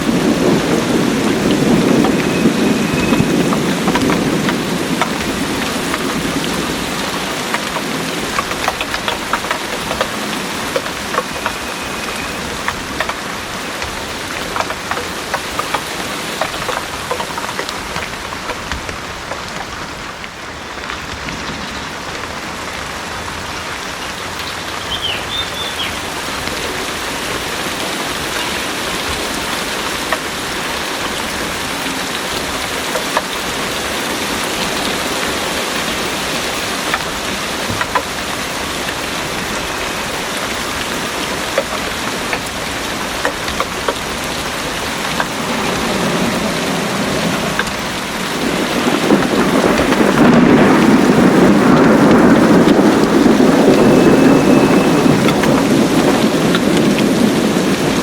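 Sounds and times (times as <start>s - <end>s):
low rumble of thunder: 0.0s - 19.0s, 34.1s - 58.0s
heavy rain pouring: 0.0s - 58.0s
raindrops ticking: 0.0s - 58.0s.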